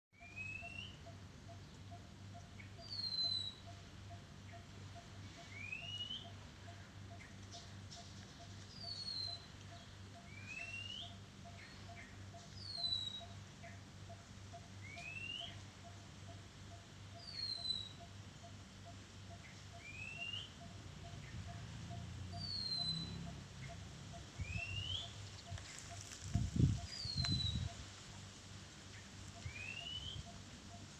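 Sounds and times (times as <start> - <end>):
bird singing whistled phrase: 10.4 - 11.1, 22.5 - 23.1, 29.5 - 30.2.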